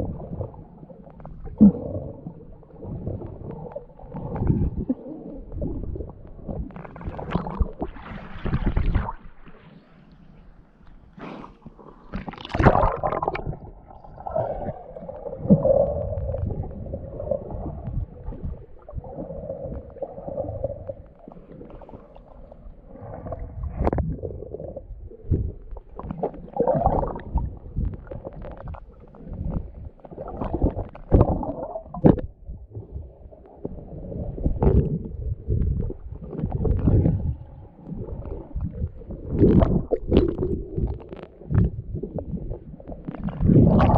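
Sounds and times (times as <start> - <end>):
muffled underwater sloshing: 0.0 - 43.9
underwater thumps: 25.3 - 33.1.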